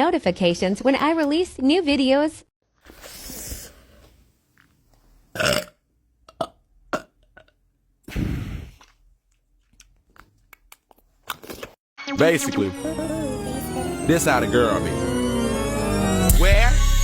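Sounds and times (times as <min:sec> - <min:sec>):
person burping: 0:05.4 - 0:07.5.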